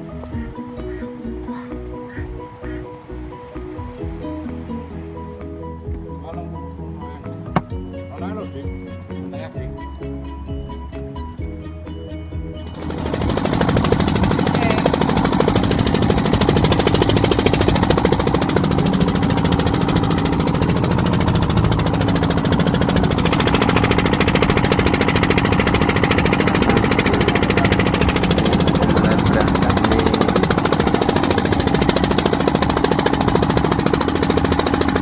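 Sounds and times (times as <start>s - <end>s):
boat engine knocking: 7.5s - 7.9s, 12.4s - 35.0s.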